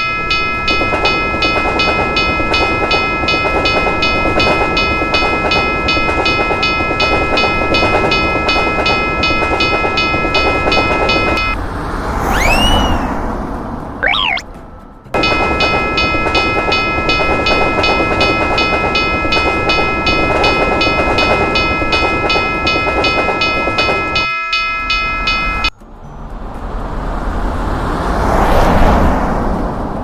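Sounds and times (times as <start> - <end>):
railroad crossing bell ringing: 0.0 - 11.7, 14.0 - 14.4, 15.2 - 26.5
passing train rumble: 0.0 - 30.0
tone rising and falling: 12.2 - 13.3, 14.0 - 14.4.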